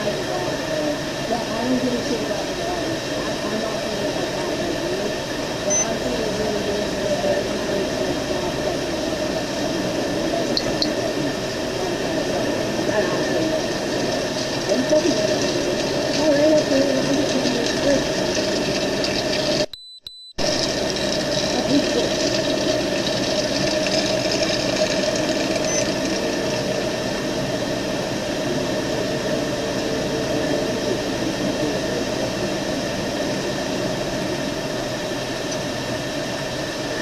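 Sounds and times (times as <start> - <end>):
faint high beep: 5.7 - 5.9, 19.7 - 20.4.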